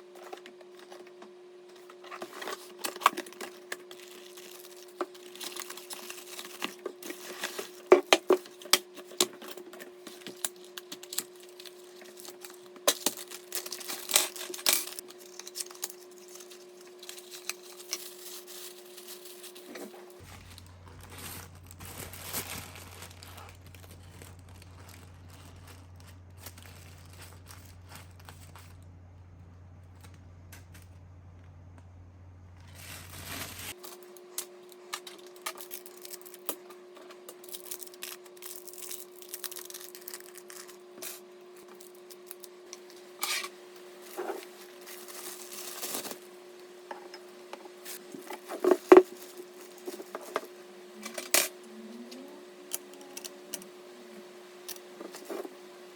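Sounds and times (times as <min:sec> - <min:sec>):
packaging crinkling and tearing: 0:01.7 - 0:28.8, 0:32.6 - 0:46.8, 0:47.8 - 0:50.6.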